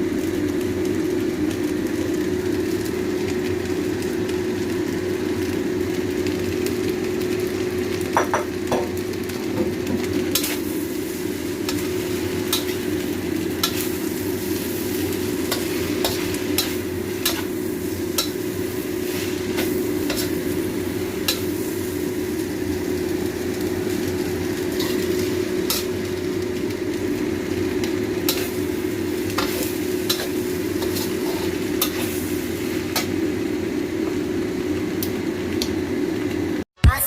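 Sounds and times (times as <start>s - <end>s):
noodles sizzling in a pan: 0.0s - 36.6s
steady hum: 9.6s - 37.0s.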